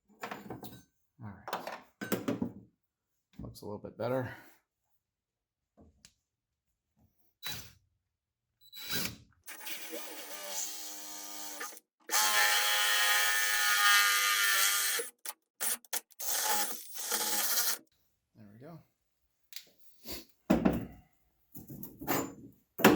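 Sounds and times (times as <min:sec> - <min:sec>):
cordless drill drilling fiberglass: 0:09.4 - 0:17.9.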